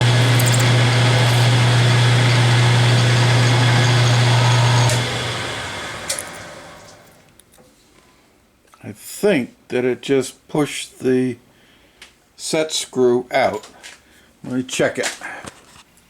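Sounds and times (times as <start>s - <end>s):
machine tool humming: 0.0s - 7.2s.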